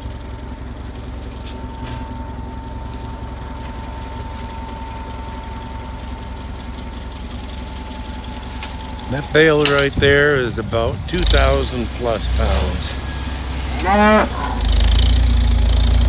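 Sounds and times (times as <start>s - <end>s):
thin steady whine: 0.0s - 16.0s
tractor engine droning: 0.0s - 16.0s.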